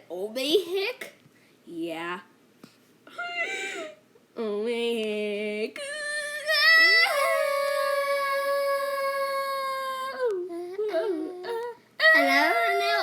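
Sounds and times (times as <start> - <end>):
high-pitched howl-like voice: 5.8 - 13.0
wavering vocal sounds: 5.8 - 13.0.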